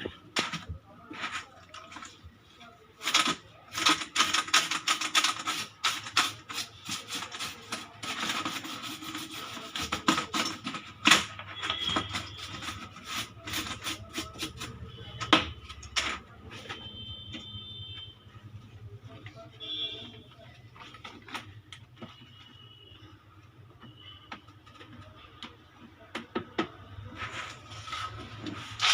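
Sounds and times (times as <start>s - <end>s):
plastic keyboard parts clicking: 3.0s - 16.3s, 24.3s - 26.8s.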